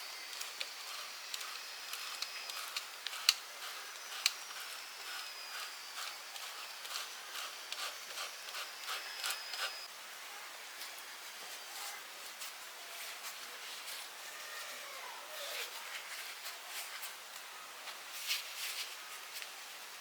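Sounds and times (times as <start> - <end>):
wood fire crackling: 0.0 - 9.9.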